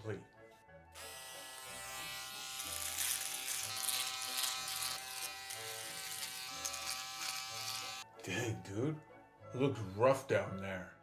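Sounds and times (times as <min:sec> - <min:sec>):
electric shaver humming: 0:01.0 - 0:08.0.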